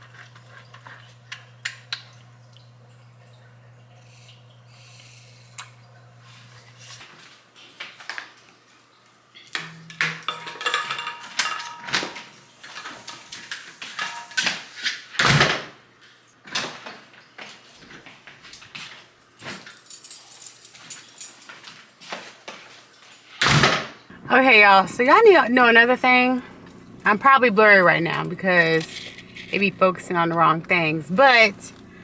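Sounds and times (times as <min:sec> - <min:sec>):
low steady hum: 0:00.0 - 0:07.0, 0:24.1 - 0:32.0.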